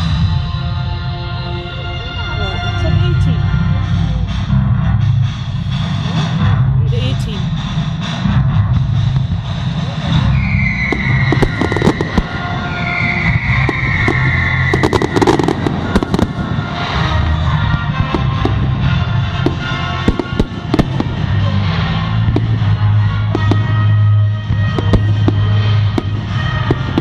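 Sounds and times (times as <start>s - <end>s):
music with low bass: 0.0s - 27.0s
fireworks bangs and crackles: 2.7s - 27.0s
whistling fireworks: 7.7s - 27.0s.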